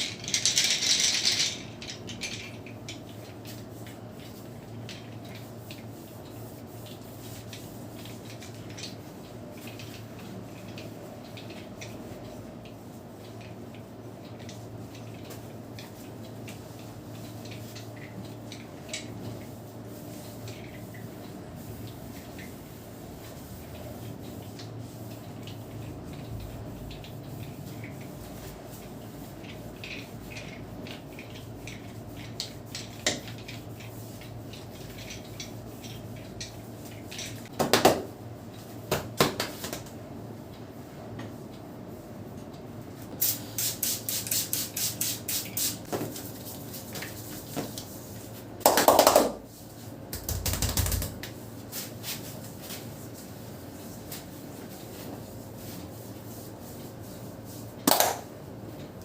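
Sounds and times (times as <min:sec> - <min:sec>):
hands clapping and snapping: 0:38.9 - 0:39.9, 0:48.6 - 0:49.4, 0:50.1 - 0:51.2, 0:57.9 - 0:58.2.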